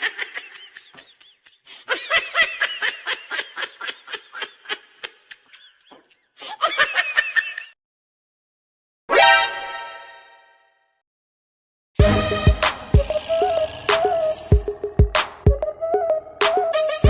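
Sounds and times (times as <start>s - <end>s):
person laughing: 0.0s - 7.8s.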